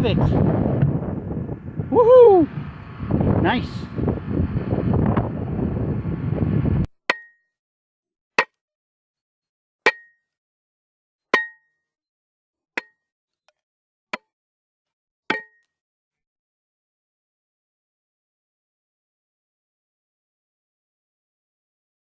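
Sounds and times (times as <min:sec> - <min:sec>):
wind noise on microphone: 0:00.0 - 0:06.9.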